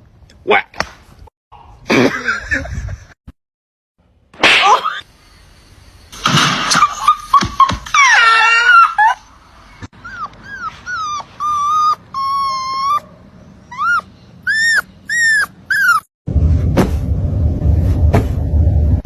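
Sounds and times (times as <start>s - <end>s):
dog whining: 9.9s - 16.1s.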